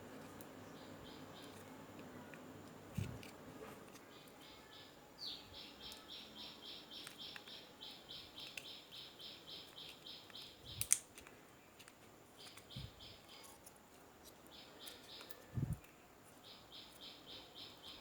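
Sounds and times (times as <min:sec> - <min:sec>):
sharp click: 0:10.4 - 0:11.2.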